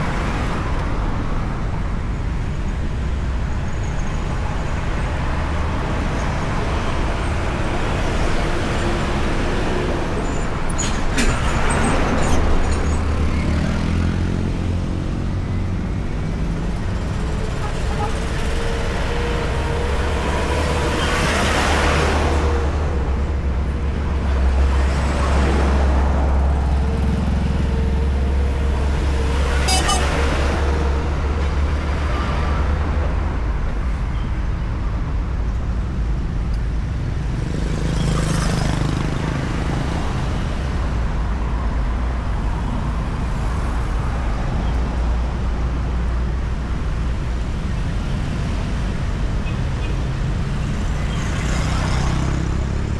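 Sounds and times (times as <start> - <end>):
highway traffic rumble: 0.0 - 52.9
vehicles passing close by: 0.0 - 52.9.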